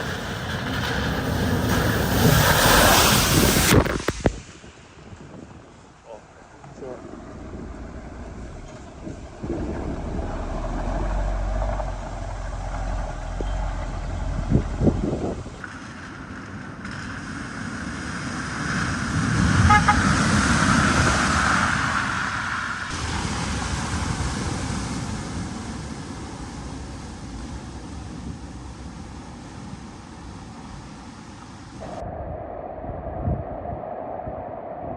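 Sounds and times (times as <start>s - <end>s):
water rushing and splashing: 0.0s - 5.3s, 6.2s - 32.0s
vehicle engines running: 6.1s - 16.7s.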